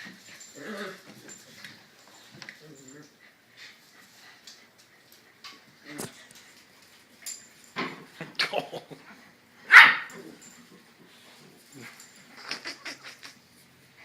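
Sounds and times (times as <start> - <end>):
small dog yipping and barking: 9.7 - 10.2.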